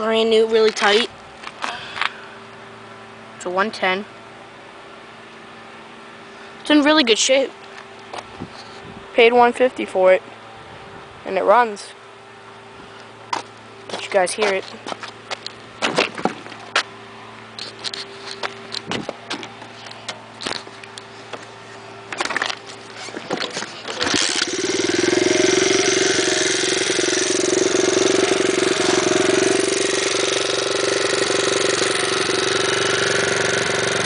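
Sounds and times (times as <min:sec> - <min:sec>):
motorbike engine idling: 0:22.9 - 0:34.0.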